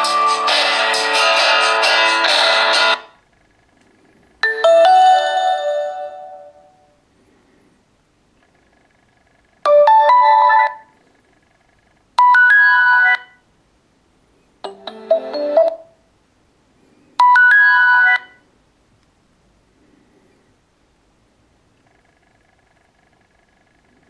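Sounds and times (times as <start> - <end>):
phone ringtone melody: 4.4 - 6.9, 9.7 - 11.0, 12.2 - 13.4, 14.6 - 16.0, 17.2 - 18.4.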